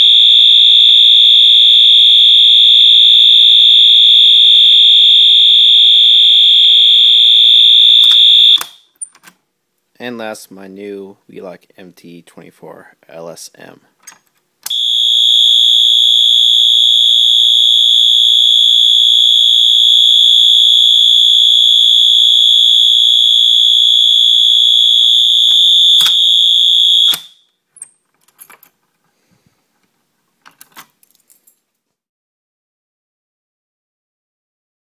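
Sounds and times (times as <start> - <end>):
fire alarm horn high tone: 0.0 - 8.8, 14.7 - 27.5.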